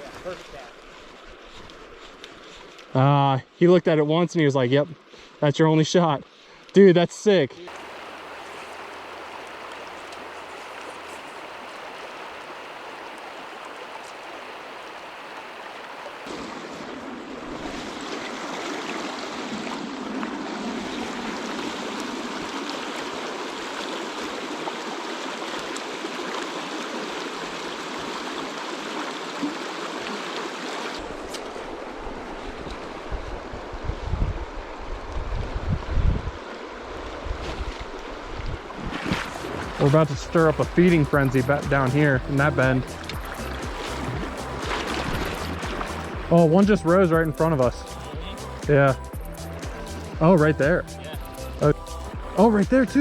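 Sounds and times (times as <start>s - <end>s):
river water rushing: 7.7s - 33.8s, 36.4s - 53.0s.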